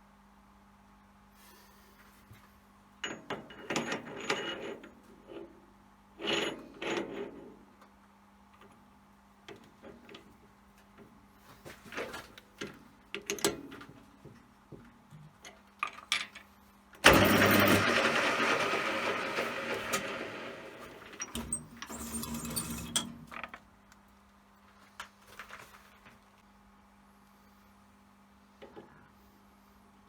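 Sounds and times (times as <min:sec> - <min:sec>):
metal tools clinking and rattling: 0:21.1 - 0:23.5.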